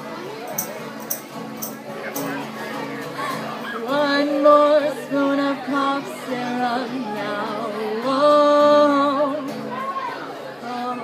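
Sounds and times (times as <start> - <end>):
person singing: 3.8 - 9.7, 10.6 - 11.0.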